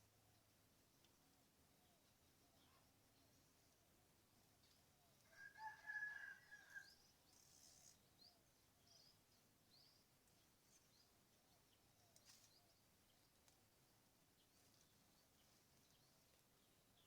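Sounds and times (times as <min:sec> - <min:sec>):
small birds chirping: 0:00.0 - 0:17.0
faint rooster crowing: 0:05.2 - 0:07.1.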